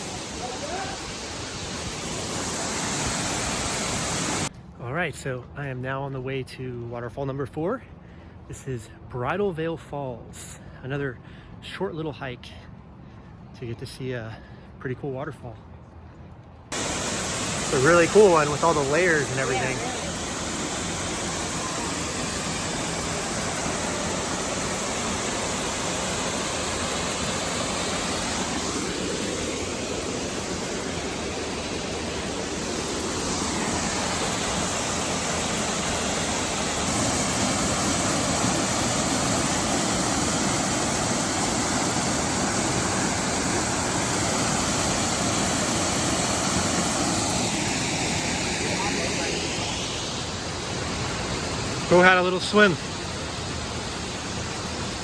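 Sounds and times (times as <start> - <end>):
waterfall rushing: 0.0 - 4.5, 16.7 - 55.0.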